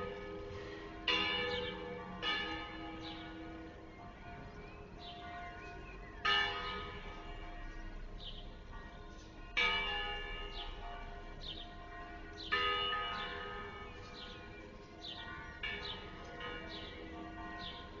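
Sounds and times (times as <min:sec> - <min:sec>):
church bell tolling: 0:00.0 - 0:18.0.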